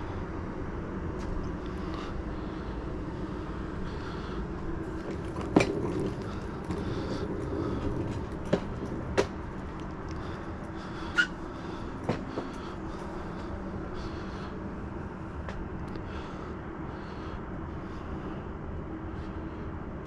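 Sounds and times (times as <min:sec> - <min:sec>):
steady low rumble: 0:00.0 - 0:20.0
sharp knocks and clacks: 0:04.9 - 0:10.2.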